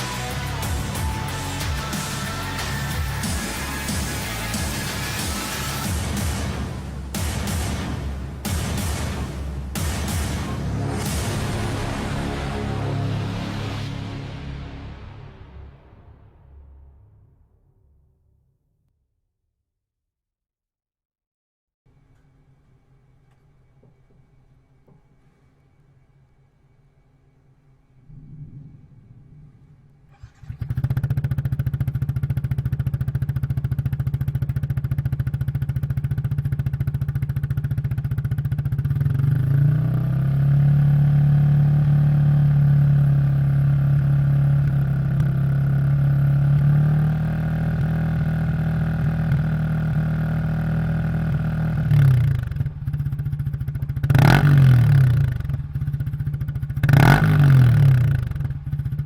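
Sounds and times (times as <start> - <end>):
motorcycle engine idling: 0.0 - 10.9, 30.1 - 59.0
engine throttle revs: 0.0 - 16.8, 28.1 - 35.4, 38.8 - 59.0.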